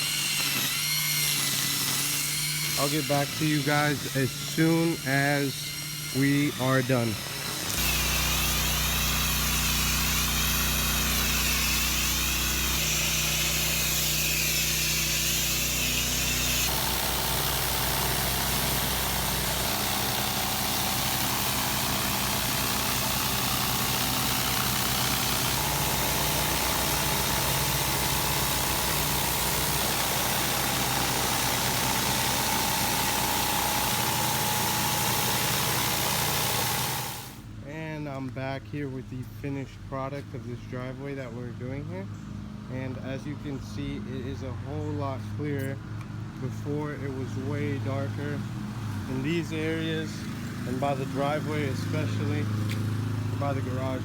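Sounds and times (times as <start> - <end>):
pressure washer engine: 6.2 - 37.4, 48.0 - 54.0.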